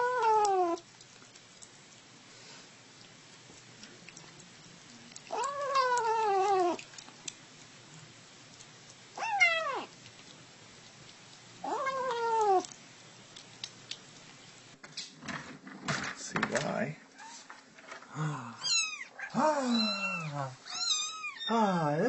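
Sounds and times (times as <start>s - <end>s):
cat meowing: 0.0s - 0.8s, 5.3s - 6.8s, 9.2s - 10.0s, 11.6s - 12.7s, 18.6s - 21.6s.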